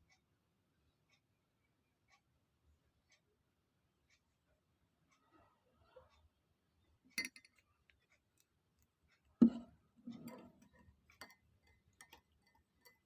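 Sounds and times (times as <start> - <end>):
glass and spoon clinking: 7.2 - 7.6, 9.4 - 13.0.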